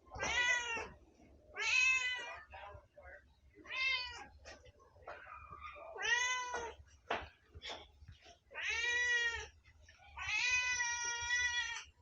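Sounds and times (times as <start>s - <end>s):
cat meowing: 0.2s - 1.0s, 1.6s - 2.3s, 6.0s - 6.8s, 8.5s - 9.5s, 10.2s - 11.9s.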